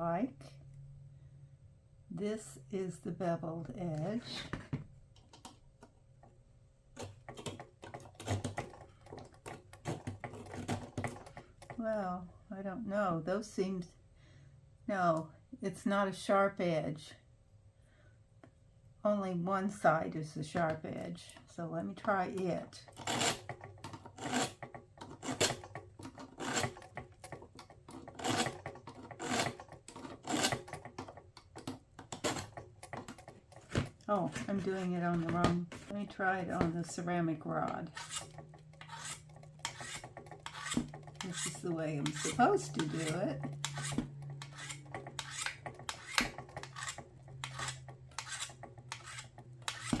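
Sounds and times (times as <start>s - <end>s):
blade scraping on sharpener: 22.0s - 31.2s, 32.1s - 33.6s, 34.3s - 50.0s
blade rasping on sharpening rod: 37.9s - 50.0s.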